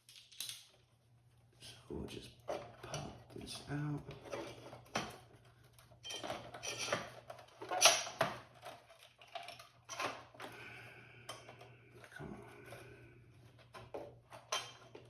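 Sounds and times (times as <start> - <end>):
clicks and knocks of computer parts: 6.0 - 10.5
faint low hum: 8.6 - 15.0.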